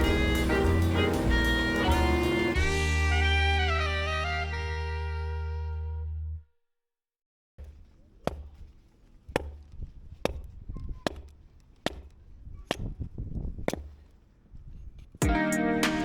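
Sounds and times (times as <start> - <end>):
axe chopping wood: 7.6 - 10.5, 11.1 - 13.0, 13.7 - 14.1.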